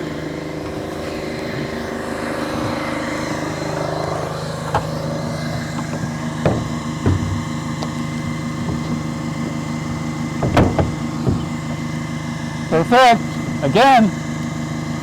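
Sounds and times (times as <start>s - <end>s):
small engine running: 0.0s - 15.0s
sharp knocks: 4.6s - 12.1s.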